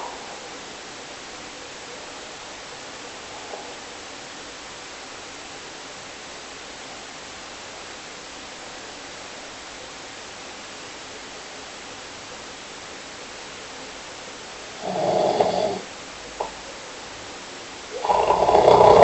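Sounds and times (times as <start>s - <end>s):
steady hiss: 0.0s - 19.0s.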